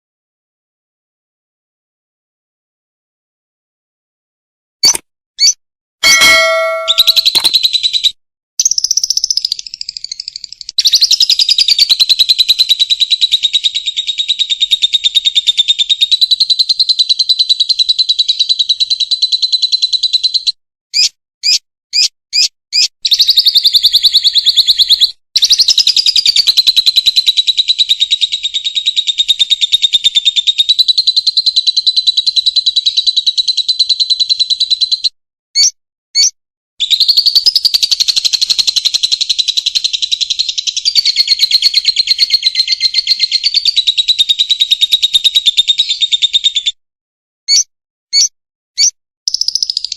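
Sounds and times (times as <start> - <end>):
short bird chirps: 4.8 - 7.8, 47.5 - 49.9
bird rapid chattering trill: 4.8 - 8.0, 8.6 - 20.4, 21.0 - 35.0, 35.6 - 46.7, 47.5 - 49.9.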